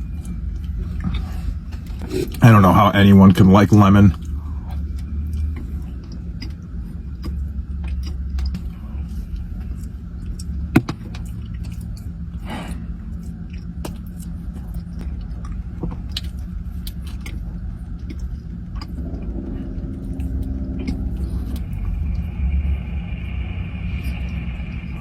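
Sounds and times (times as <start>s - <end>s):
person chewing with wet clicks: 0.0s - 2.4s, 4.1s - 19.3s
low hum: 0.0s - 25.0s.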